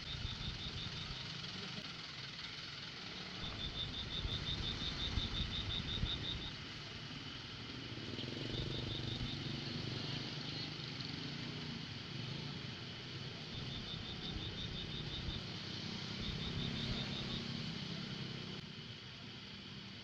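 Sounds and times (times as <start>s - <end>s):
low outdoor rumble: 0.0s - 20.0s.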